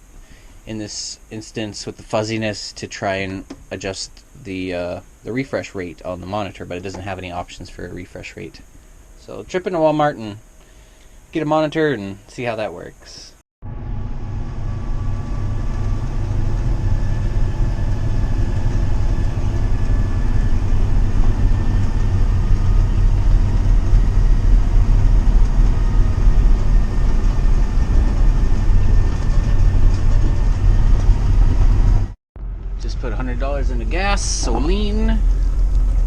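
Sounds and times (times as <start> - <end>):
vehicle engine and road rumble: 13.6 - 36.0.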